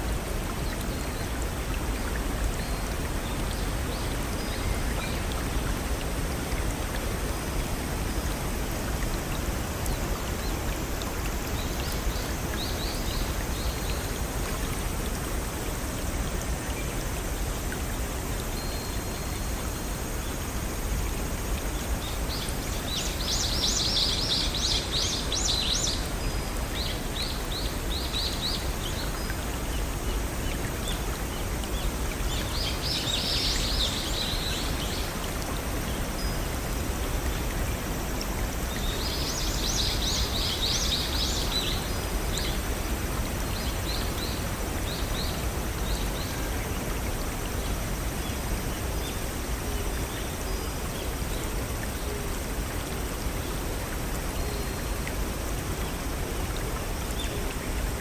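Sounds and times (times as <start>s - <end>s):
brook running over rocks: 0.0s - 58.0s
songbird singing: 22.0s - 35.2s, 38.6s - 42.6s.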